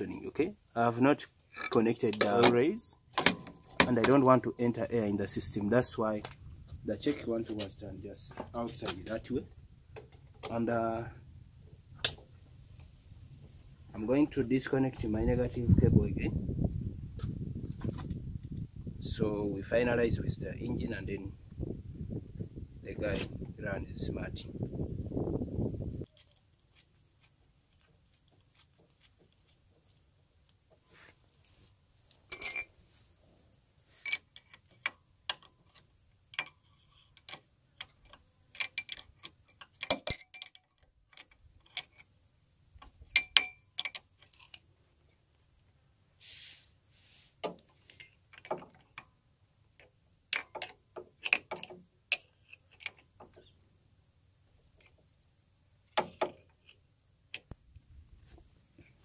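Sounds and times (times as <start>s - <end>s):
metallic tool clicks and clinks: 32.3s - 32.7s, 36.4s - 42.1s, 43.0s - 44.6s.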